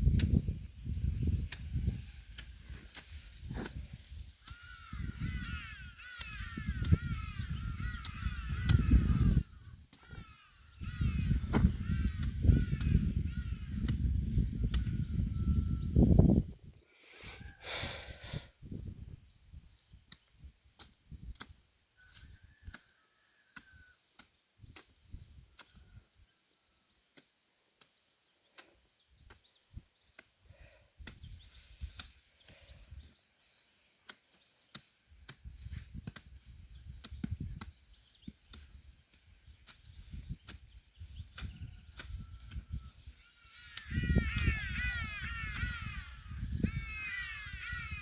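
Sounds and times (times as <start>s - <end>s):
digging tool chopping soil: 1.3s - 4.7s, 11.2s - 14.0s, 31.0s - 32.3s, 34.0s - 43.0s
faint bird call: 42.0s - 48.0s.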